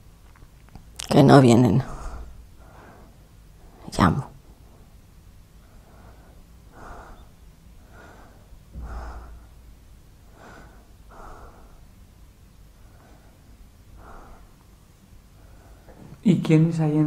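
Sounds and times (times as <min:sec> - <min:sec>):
woman breathing heavily: 0:01.8 - 0:03.9, 0:05.6 - 0:16.2.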